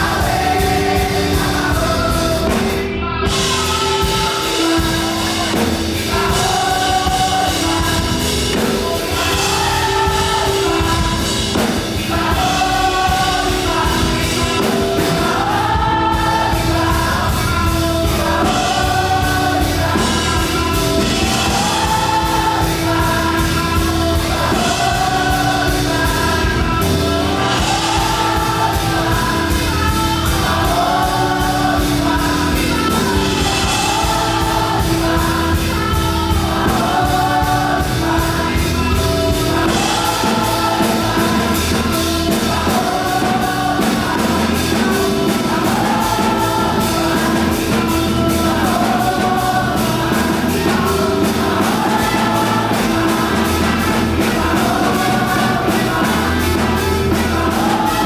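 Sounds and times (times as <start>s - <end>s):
band with fast beat: 0.0s - 58.0s
choir singing gospel: 0.0s - 58.0s.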